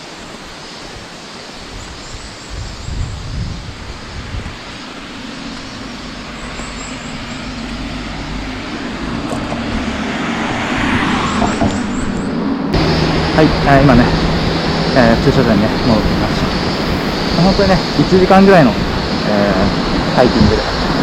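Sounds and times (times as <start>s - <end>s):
steady rushing background: 0.0s - 21.0s
car engine approaching: 4.5s - 21.0s.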